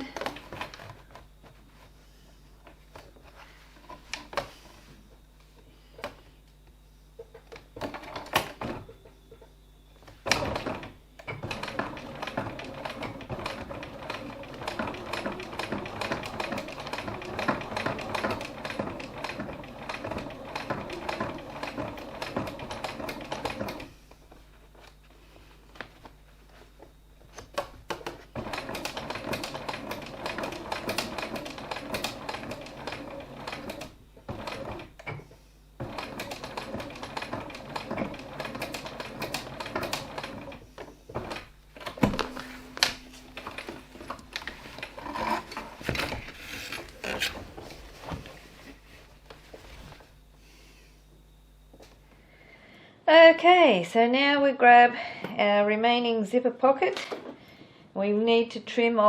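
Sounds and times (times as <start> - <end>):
sewing machine stitching: 10.2 - 23.9, 27.6 - 35.2, 35.8 - 47.8.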